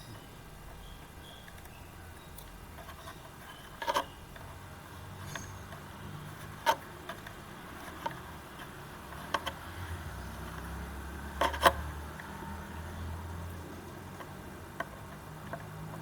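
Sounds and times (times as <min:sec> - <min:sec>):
hands clicking and knocking on parts: 0:13.8 - 0:16.0.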